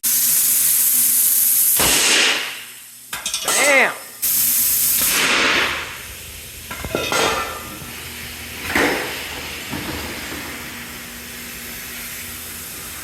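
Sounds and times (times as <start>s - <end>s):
compressed air hissing: 0.0s - 3.1s, 4.1s - 13.0s
faint steady hum: 2.6s - 13.0s.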